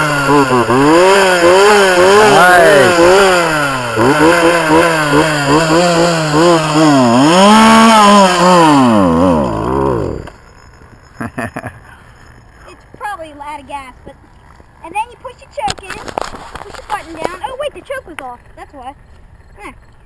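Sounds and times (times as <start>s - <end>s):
chainsaw revving: 0.0s - 10.4s.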